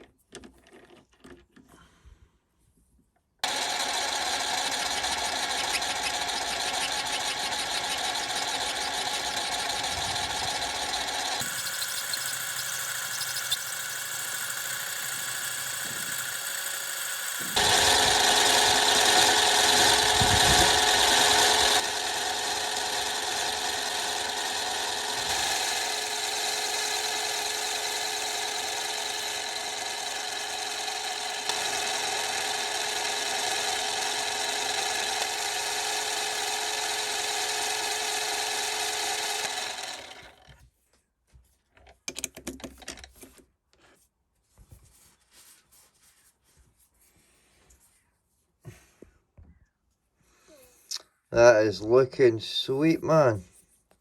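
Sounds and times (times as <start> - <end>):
lathe whine: 3.4 - 40.4.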